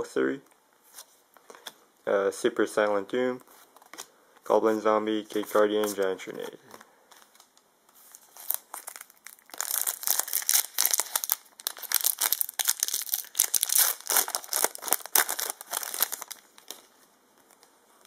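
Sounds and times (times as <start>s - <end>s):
foil wrapper crinkling and tearing: 8.1s - 16.8s.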